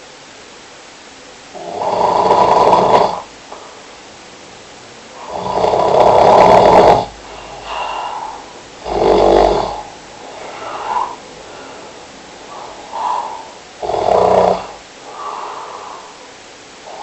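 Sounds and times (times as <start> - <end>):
person snoring: 1.5 - 3.3, 5.2 - 16.2
quiet breath out: 3.5 - 3.9, 7.2 - 8.6, 9.7 - 13.6, 14.6 - 17.0.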